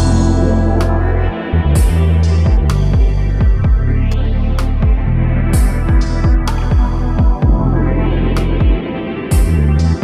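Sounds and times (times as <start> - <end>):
cymbal strikes: 0.0 - 2.0
deep bass hits: 0.0 - 4.1
electronic music: 0.0 - 10.0.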